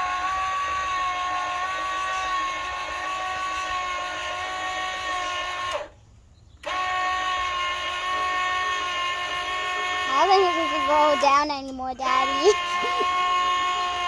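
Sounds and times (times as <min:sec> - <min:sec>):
electric motor whining: 0:06.6 - 0:14.0.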